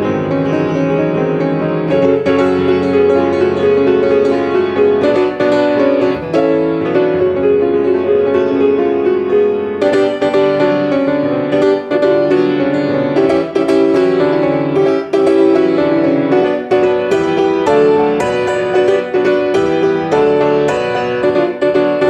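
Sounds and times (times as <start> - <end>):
solo piano playing: 0.0 - 22.0.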